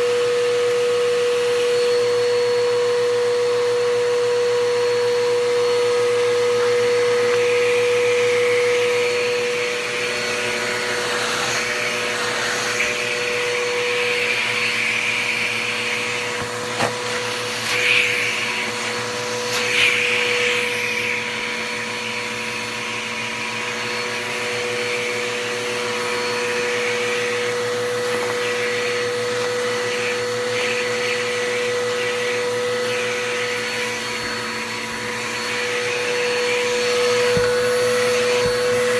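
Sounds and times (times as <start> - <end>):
upright vacuum cleaner running: 0.0 - 38.9.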